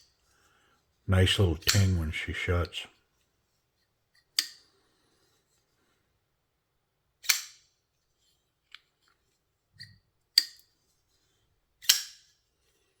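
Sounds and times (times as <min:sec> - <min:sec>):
folding knife snapping open and shut: 0:07.2 - 0:07.6, 0:11.8 - 0:12.2.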